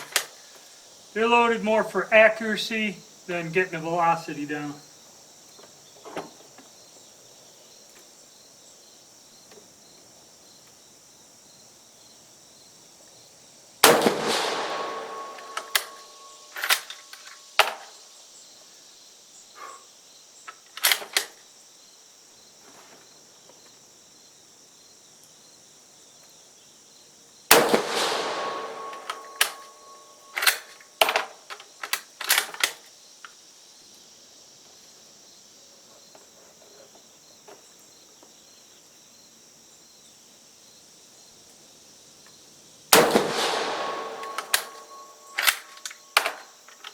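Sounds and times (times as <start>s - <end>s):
crickets chirring: 0.0s - 46.9s
rifle shots echoing: 13.8s - 16.9s, 27.5s - 30.7s, 43.0s - 46.4s
rifle bolt metallic clicks: 13.8s - 17.0s, 27.5s - 29.7s, 43.0s - 46.4s.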